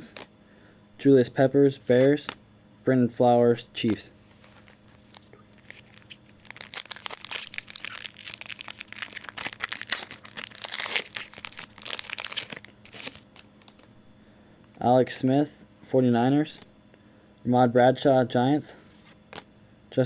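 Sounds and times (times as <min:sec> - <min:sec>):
plastic wrapper crinkling and tearing: 0:04.3 - 0:13.9.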